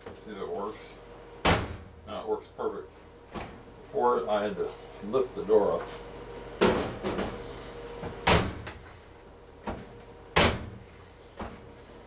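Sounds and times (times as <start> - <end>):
washing machine door clunking shut: 1.4 - 1.9, 8.2 - 8.8, 10.4 - 10.8.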